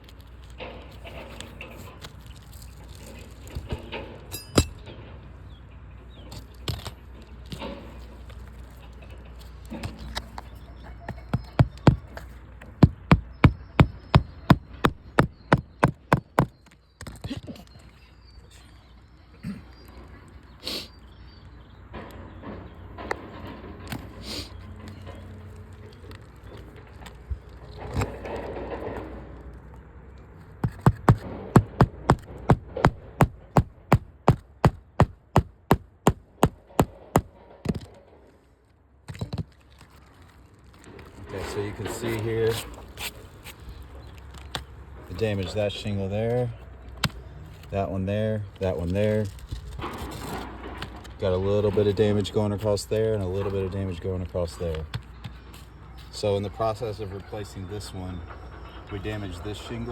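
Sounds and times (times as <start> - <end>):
hand hammer striking: 4.3 - 4.8, 11.3 - 12.2, 12.8 - 16.6, 30.6 - 37.8.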